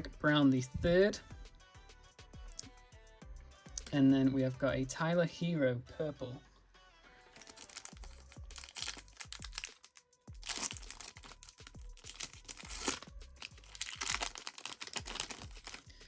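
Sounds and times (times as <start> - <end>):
background music with steady beat: 0.0 - 16.0
foil wrapper tearing and crinkling: 7.4 - 16.0.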